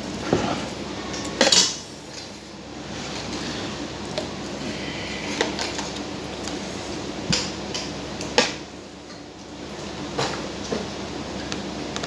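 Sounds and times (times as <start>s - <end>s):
utensils clinking against dishes: 1.1s - 2.4s.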